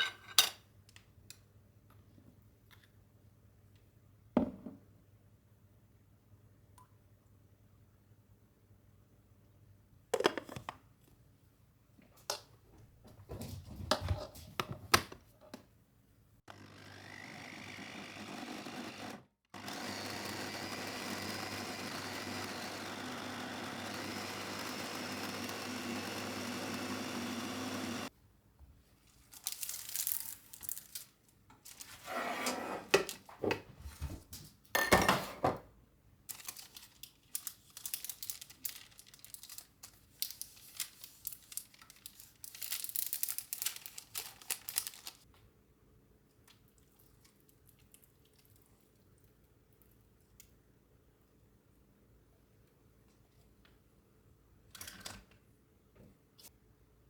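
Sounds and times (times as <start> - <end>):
small electric motor running: 16.5 - 28.1.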